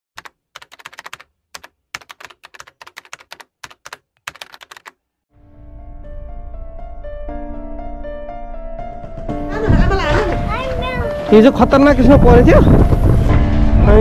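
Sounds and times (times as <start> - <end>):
computer keyboard typing: 0.2 - 5.0.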